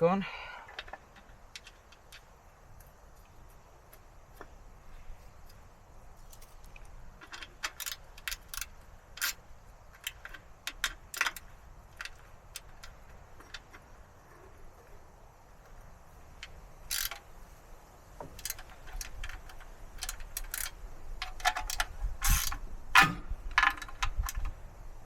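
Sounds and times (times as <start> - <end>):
metallic clinks of tools and bolts: 6.2 - 14.5, 16.3 - 17.3, 18.3 - 24.5.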